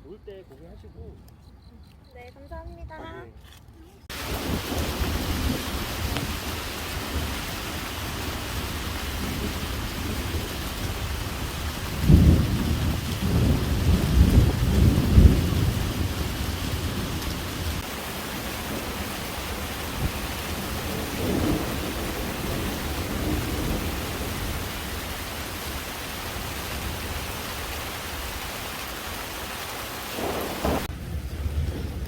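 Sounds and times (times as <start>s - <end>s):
rain falling: 4.1s - 32.0s.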